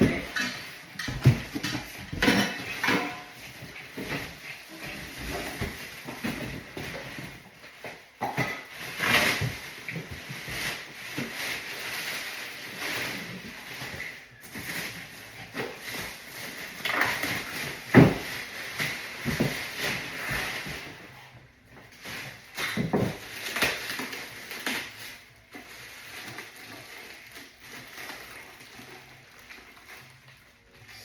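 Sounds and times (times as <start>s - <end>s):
hard objects clattering: 0.0s - 21.1s.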